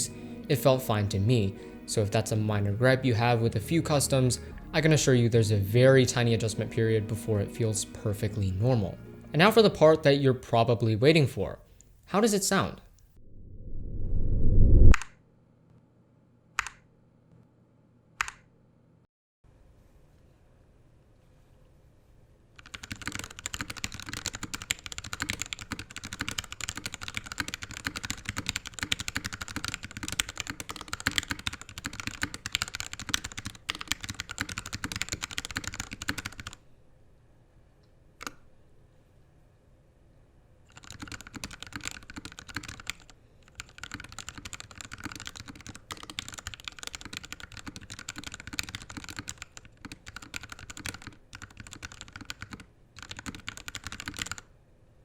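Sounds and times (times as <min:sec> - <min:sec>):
rapid mechanical keyboard typing: 0:22.6 - 0:36.6, 0:40.7 - 0:54.5.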